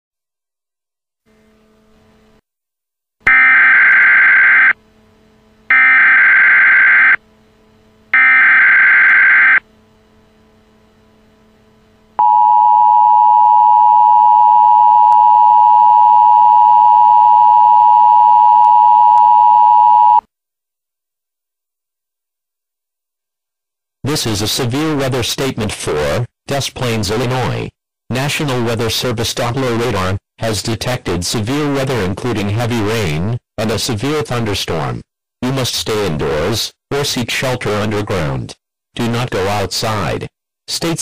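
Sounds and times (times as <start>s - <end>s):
two-tone attention signal: 3.3s - 4.8s, 5.7s - 7.2s, 8.2s - 9.6s, 12.2s - 20.2s.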